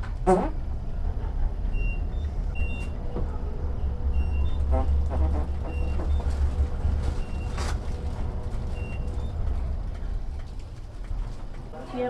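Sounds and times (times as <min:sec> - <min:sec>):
low rumbling fart sound: 0:00.1 - 0:00.9, 0:04.2 - 0:08.5.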